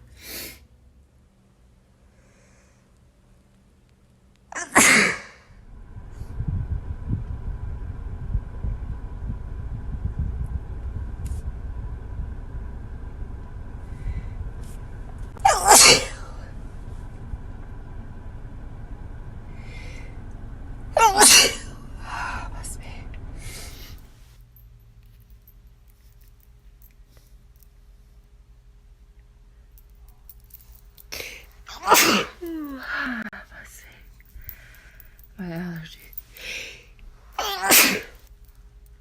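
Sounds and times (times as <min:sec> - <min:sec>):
person sneezing: 0:04.6 - 0:05.4, 0:15.4 - 0:16.3, 0:21.0 - 0:21.7, 0:31.2 - 0:33.2, 0:37.4 - 0:38.2
steady low rumble: 0:05.4 - 0:37.4.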